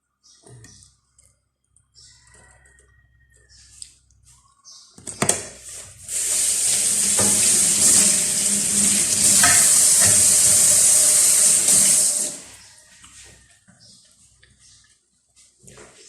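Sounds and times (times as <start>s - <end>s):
running water stream: 6.0s - 12.7s.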